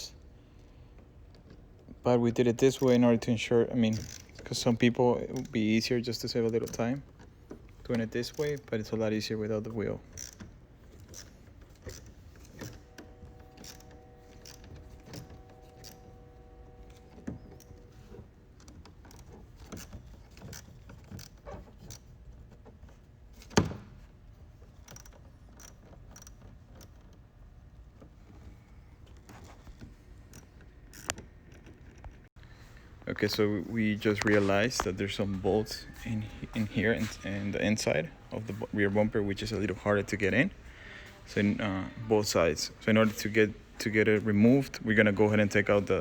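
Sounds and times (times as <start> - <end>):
faint steady hum: 0.0 - 46.0.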